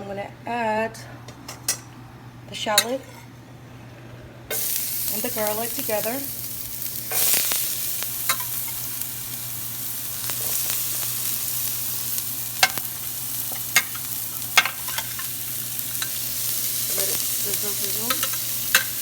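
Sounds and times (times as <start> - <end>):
shallot and garlic sizzling in oil: 4.5 - 19.0.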